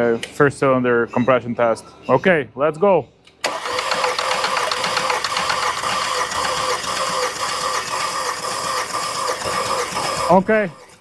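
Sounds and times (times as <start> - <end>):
starter cranking engine: 3.4 - 11.0.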